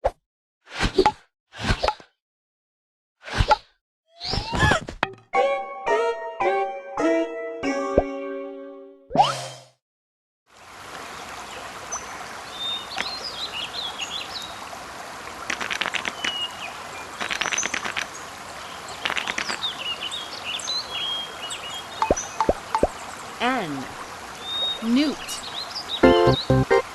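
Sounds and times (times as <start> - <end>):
rapid rattling bird calls: 15.5 - 18.2, 18.9 - 20.2
birds chirping: 16.0 - 26.9.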